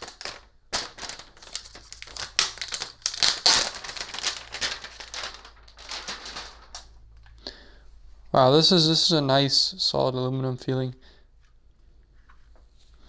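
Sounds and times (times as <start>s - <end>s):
plastic film crinkling: 0.0s - 7.0s.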